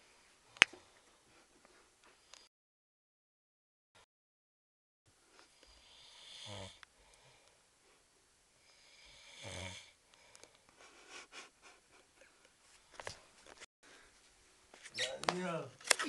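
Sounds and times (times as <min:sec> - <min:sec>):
man snoring: 0:05.6 - 0:07.4, 0:08.7 - 0:10.0.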